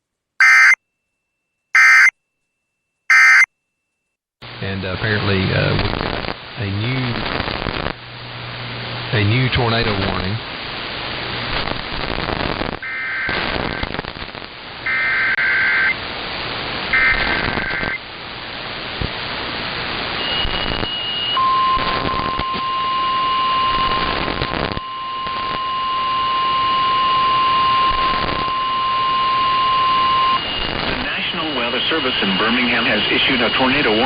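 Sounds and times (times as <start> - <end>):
steady alarm tone: 0.4 - 0.8, 1.8 - 2.1, 3.1 - 3.5
warbling data bursts: 0.4 - 0.8, 1.8 - 2.1, 3.1 - 3.5
radio static hiss: 4.5 - 21.0, 23.7 - 25.6, 27.9 - 28.5, 30.3 - 34.0.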